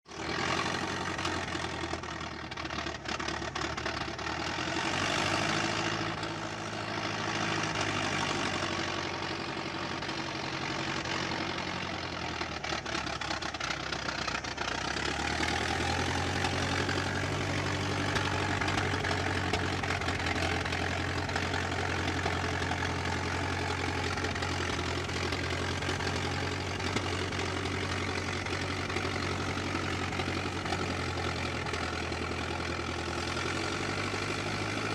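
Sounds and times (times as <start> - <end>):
car engine running with knocking: 0.1 - 34.9.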